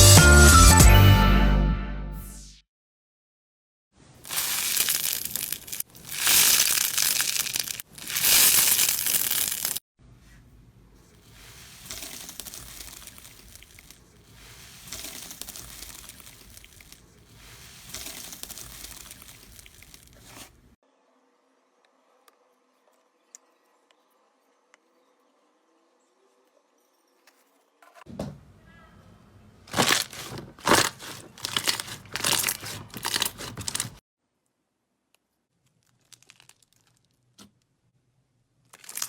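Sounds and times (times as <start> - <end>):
slime crackling and crunching: 4.3 - 9.8, 11.3 - 20.5, 29.7 - 34.0, 35.9 - 37.2, 38.8 - 39.0
slime squishing: 4.3 - 9.8, 11.0 - 20.6, 29.7 - 34.0, 38.8 - 39.0.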